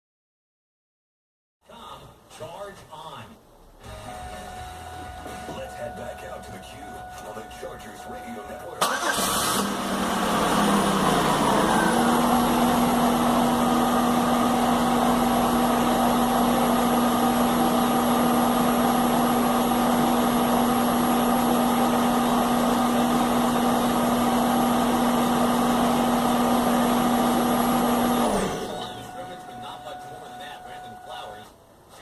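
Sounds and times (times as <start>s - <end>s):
engine whine: 3.8s - 31.5s
car engine idling roughly: 8.8s - 29.8s.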